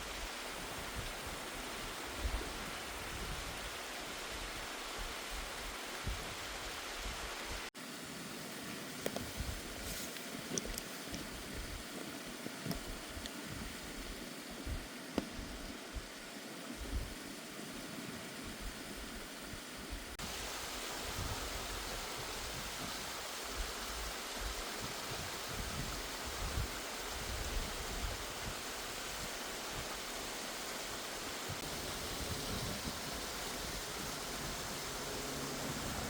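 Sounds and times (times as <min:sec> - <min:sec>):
waterfall rushing: 0:28.1 - 0:36.0.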